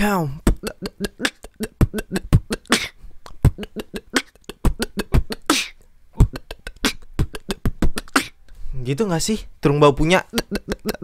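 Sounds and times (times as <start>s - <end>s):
human beatbox beat: 0.4s - 8.4s, 10.2s - 11.0s.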